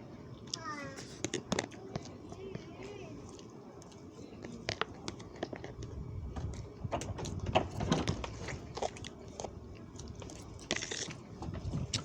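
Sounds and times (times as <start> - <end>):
person chewing and biting food: 8.4 - 12.0.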